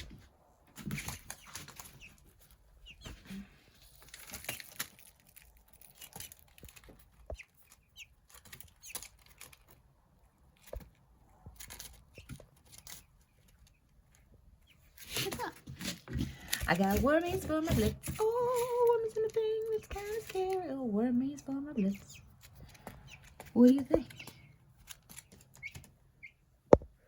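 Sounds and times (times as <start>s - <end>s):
pecking taps and rustles: 0.0s - 20.8s, 21.6s - 27.0s
chick peeping: 0.9s - 4.7s, 6.6s - 9.5s, 18.2s - 26.8s.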